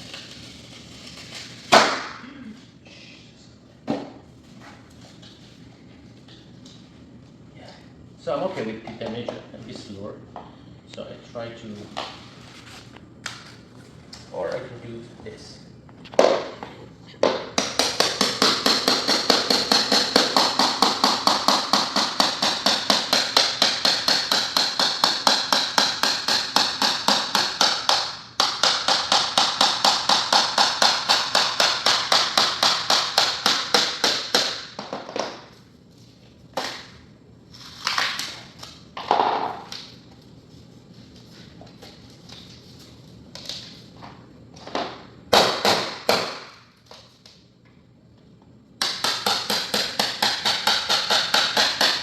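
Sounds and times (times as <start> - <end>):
tool tapping laminate floor: 17.2 - 35.5, 39.0 - 39.9, 48.8 - 52.0.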